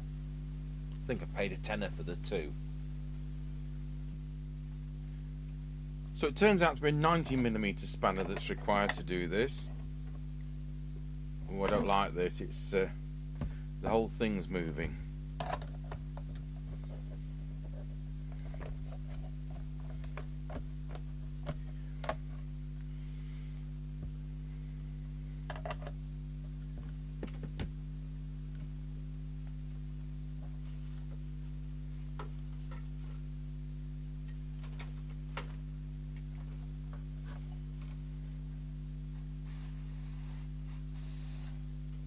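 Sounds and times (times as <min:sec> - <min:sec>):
low electrical hum: 0:00.0 - 0:42.0.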